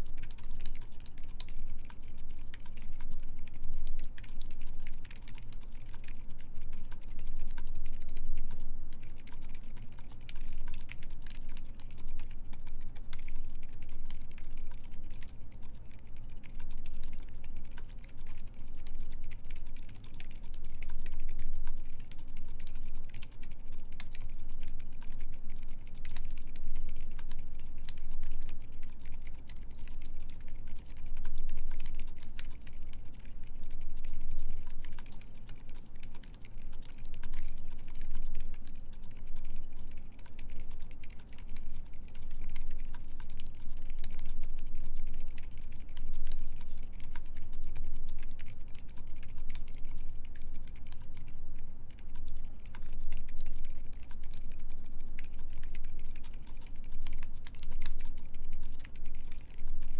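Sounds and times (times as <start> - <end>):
typing on mechanical keyboard: 55.2 - 59.6.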